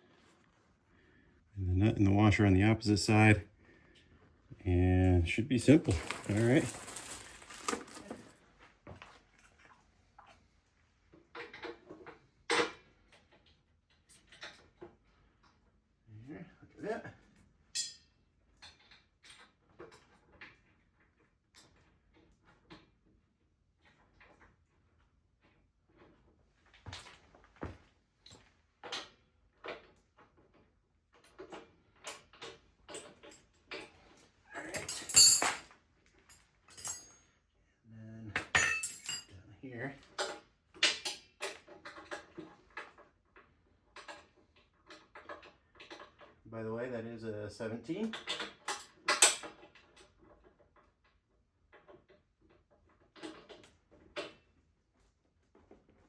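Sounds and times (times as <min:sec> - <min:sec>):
metal wrench and bolts clinking: 0:34.6 - 0:35.7, 0:36.3 - 0:37.2, 0:38.5 - 0:39.3
ringing metallic clatter: 0:34.7 - 0:35.7, 0:36.7 - 0:37.1, 0:38.6 - 0:39.3.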